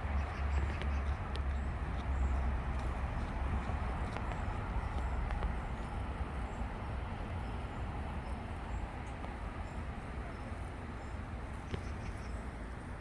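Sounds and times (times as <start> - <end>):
low rumble and hiss: 0.0 - 13.0.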